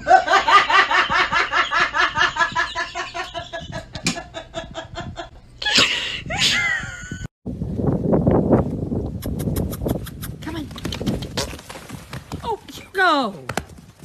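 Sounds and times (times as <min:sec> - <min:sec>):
person laughing hard: 0:00.0 - 0:07.3.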